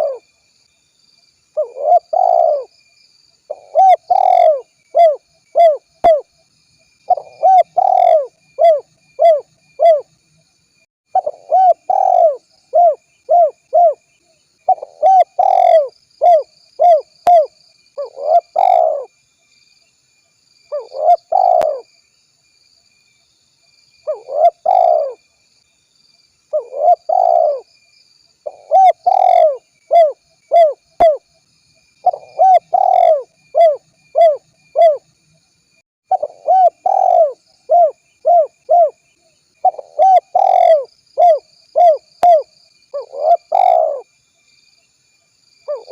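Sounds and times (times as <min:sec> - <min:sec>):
dove cooing: 0:00.0 - 0:00.2, 0:01.6 - 0:02.7, 0:03.5 - 0:06.3, 0:07.1 - 0:10.1, 0:11.1 - 0:14.0, 0:14.7 - 0:19.1, 0:20.7 - 0:21.9, 0:24.1 - 0:25.2, 0:26.5 - 0:27.7, 0:28.4 - 0:31.2, 0:32.0 - 0:35.0, 0:36.1 - 0:39.0, 0:39.6 - 0:44.1, 0:45.7 - 0:45.9.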